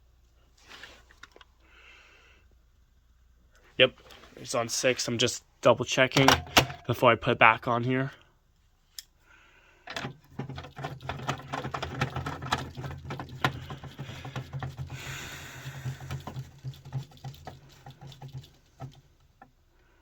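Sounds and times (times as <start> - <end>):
screw clicking and scratching: 9.9 - 15.0, 15.6 - 19.5.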